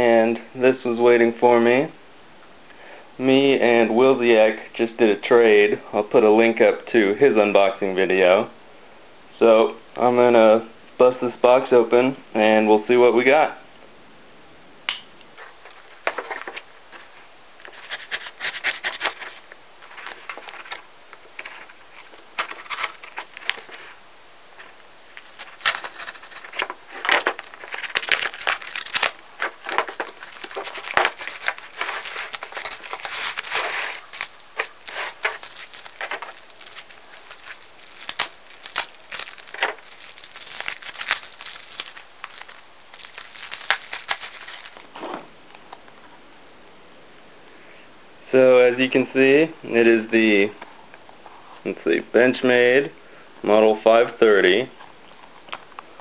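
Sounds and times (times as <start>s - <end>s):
packing crinkling: 15.4s - 24.0s, 24.6s - 45.9s
cardboard box tearing: 25.4s - 45.1s.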